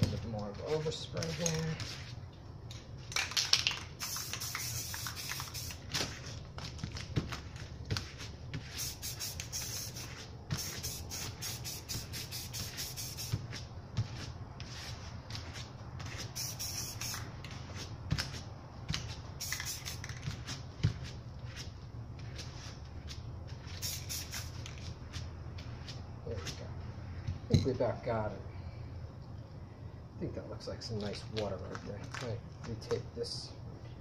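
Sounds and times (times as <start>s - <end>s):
spray paint can hissing: 3.8s - 5.9s, 8.6s - 13.5s, 16.1s - 17.3s, 19.4s - 20.2s, 23.6s - 24.8s
steady low hum: 3.8s - 34.0s.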